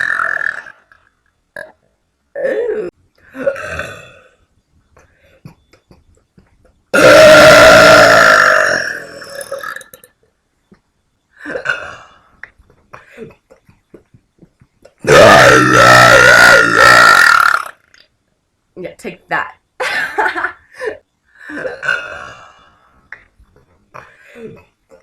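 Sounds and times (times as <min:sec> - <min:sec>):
person burping: 0:00.0 - 0:01.0, 0:01.6 - 0:04.4, 0:06.7 - 0:10.2, 0:11.4 - 0:12.3, 0:14.9 - 0:17.9, 0:21.4 - 0:22.6, 0:23.9 - 0:25.0.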